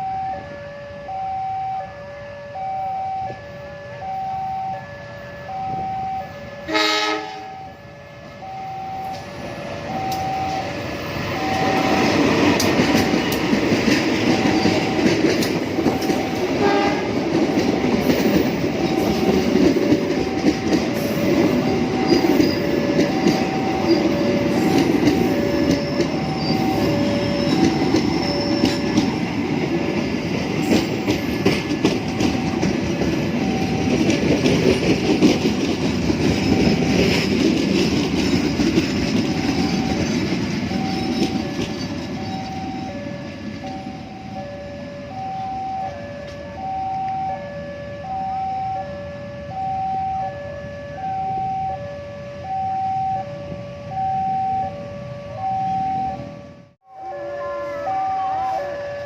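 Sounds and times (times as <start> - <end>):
level crossing two-tone alarm: 0.0 - 59.0
train horn blast: 6.6 - 7.9, 16.5 - 17.2, 56.9 - 59.0
train wheels clattering: 10.1 - 43.8.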